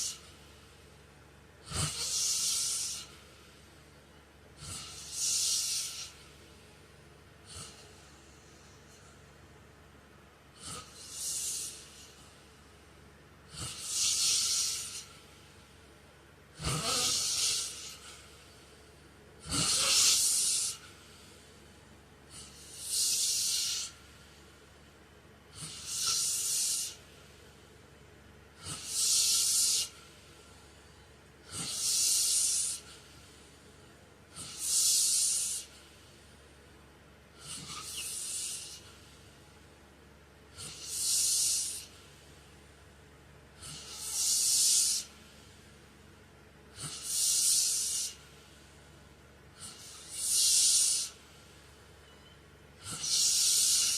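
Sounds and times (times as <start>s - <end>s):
man snoring heavily: 0.0s - 0.3s, 1.6s - 3.2s, 4.6s - 6.4s, 7.4s - 8.4s, 10.5s - 12.2s, 13.5s - 15.3s, 16.5s - 18.5s, 19.4s - 21.1s, 22.3s - 24.0s, 25.5s - 27.0s, 28.5s - 29.9s, 31.4s - 32.8s, 34.3s - 35.7s, 37.4s - 38.8s, 40.5s - 41.9s, 43.6s - 45.1s, 46.7s - 48.2s, 49.6s - 51.2s, 52.8s - 53.9s.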